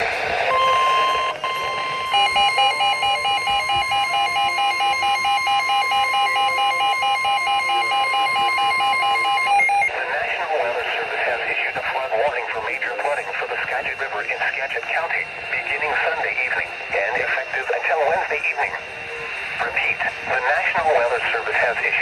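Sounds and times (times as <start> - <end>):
steady high warning tone: 0.0 - 22.0
pulsing two-pitch alert beeps: 0.5 - 9.9.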